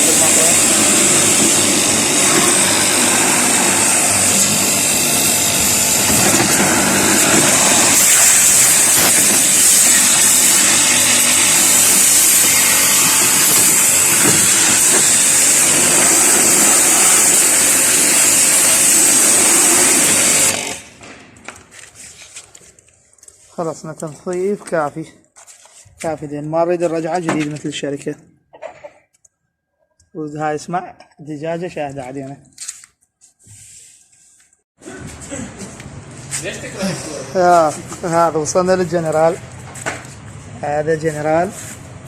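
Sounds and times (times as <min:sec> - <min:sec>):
pressure washer motor hum: 0:00.0 - 0:21.0.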